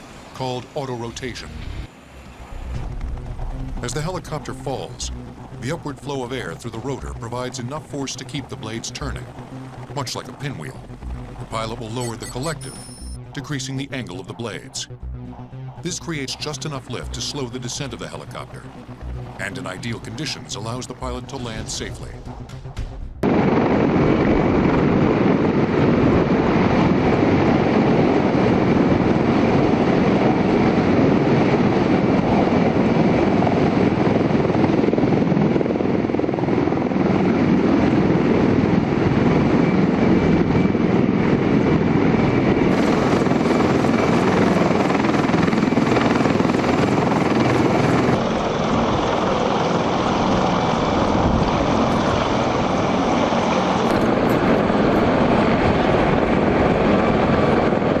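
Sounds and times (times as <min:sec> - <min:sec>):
helicopter running: 0:00.0 - 0:58.0.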